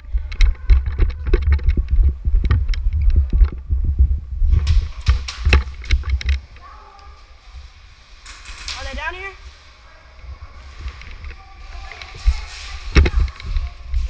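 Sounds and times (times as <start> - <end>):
low handling rumble: 0.0 - 6.8.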